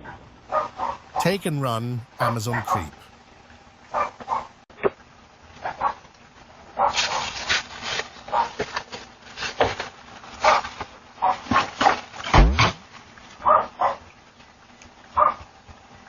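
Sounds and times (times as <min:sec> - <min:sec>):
dog barking: 0:13.5 - 0:14.0.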